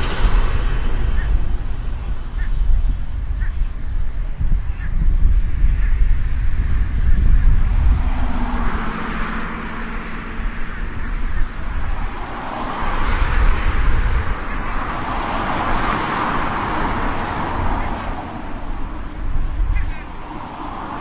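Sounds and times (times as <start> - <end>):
road traffic rumble: 0.0 - 21.0
vehicles passing: 0.0 - 21.0.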